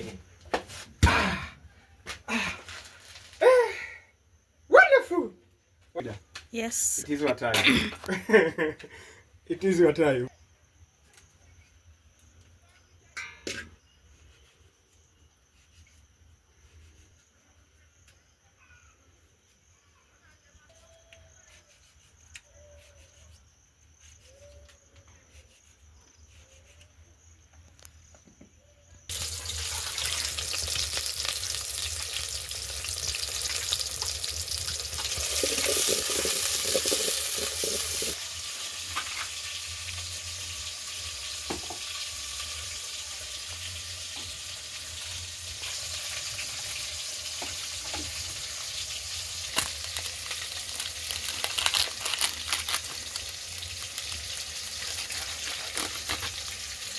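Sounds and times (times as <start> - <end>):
insect chirring: 13.8 - 56.9
food sizzling in hot oil: 29.1 - 56.9.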